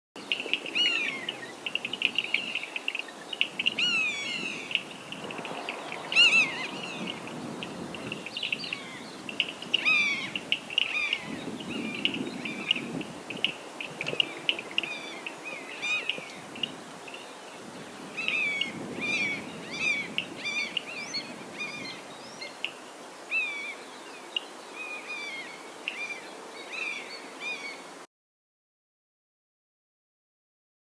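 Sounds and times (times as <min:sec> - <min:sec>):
buzzard calling: 0:00.7 - 0:16.8
short high bird calls: 0:00.7 - 0:16.8.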